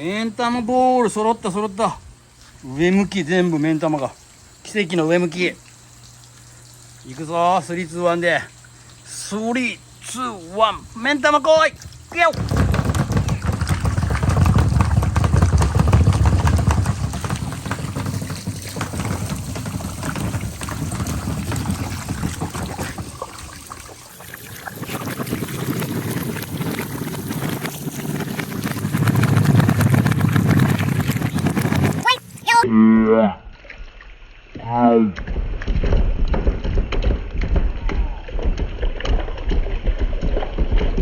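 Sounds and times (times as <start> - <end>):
marbles rolling and clattering: 12.2 - 23.2.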